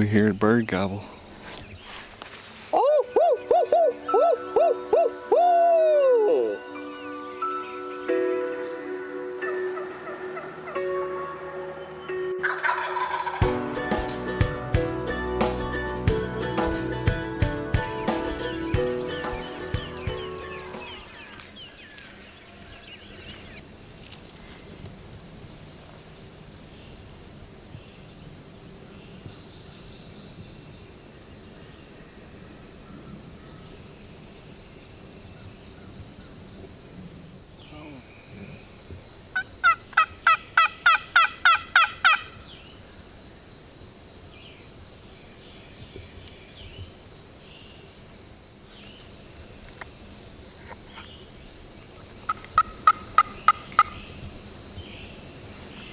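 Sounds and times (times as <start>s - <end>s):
wild turkey yelps: 2.8s - 6.6s, 12.4s - 13.4s, 39.4s - 42.4s, 52.3s - 54.0s.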